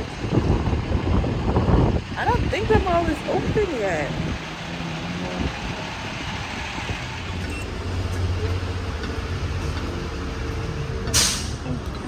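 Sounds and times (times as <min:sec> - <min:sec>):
vehicle engine hum: 0:00.0 - 0:12.0
short hissing burst: 0:11.2 - 0:11.6.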